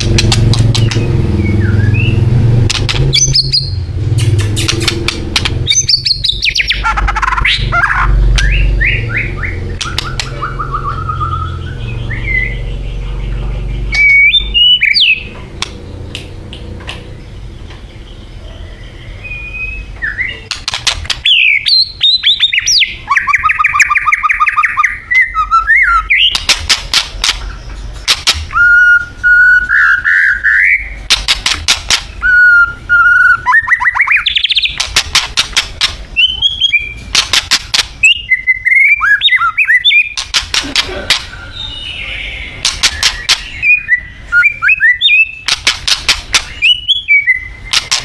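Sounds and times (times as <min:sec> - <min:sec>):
bird rapid sharp clicks: 0:00.0 - 0:02.0, 0:02.6 - 0:08.6, 0:09.7 - 0:10.9, 0:14.8 - 0:17.1, 0:20.5 - 0:21.8, 0:26.2 - 0:28.7, 0:31.0 - 0:32.2, 0:33.8 - 0:36.1, 0:37.1 - 0:38.2, 0:40.0 - 0:41.4, 0:42.6 - 0:43.8, 0:45.1 - 0:46.8, 0:47.6 - 0:48.0
bird singing whistled phrases: 0:00.8 - 0:02.2, 0:05.7 - 0:12.6, 0:13.9 - 0:15.3, 0:19.0 - 0:20.5, 0:28.5 - 0:31.0, 0:32.2 - 0:34.8, 0:36.2 - 0:37.0, 0:38.0 - 0:40.2, 0:41.3 - 0:45.4, 0:46.5 - 0:47.7.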